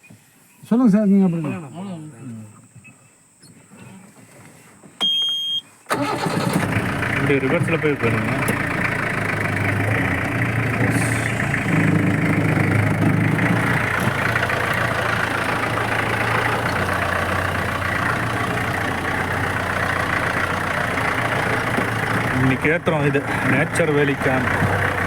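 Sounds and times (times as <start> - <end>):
jeep engine droning: 5.9 - 25.0.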